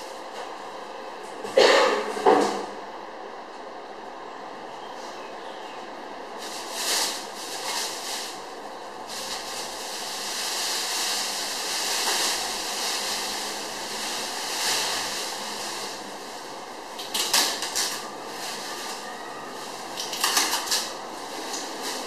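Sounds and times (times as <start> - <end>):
packaging rustling and scraping: 6.4 - 8.4, 9.0 - 16.4, 17.0 - 22.0.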